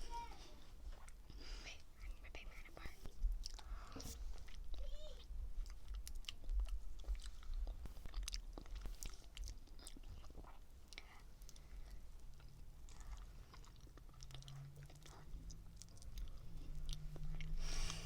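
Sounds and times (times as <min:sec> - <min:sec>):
wet chewing sounds: 0:03.0 - 0:18.0.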